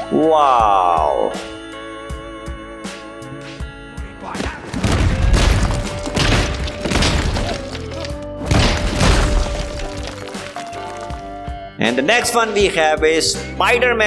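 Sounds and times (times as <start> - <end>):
music with a held tone: 0.0 - 14.0
booming crashing hits: 4.7 - 10.2.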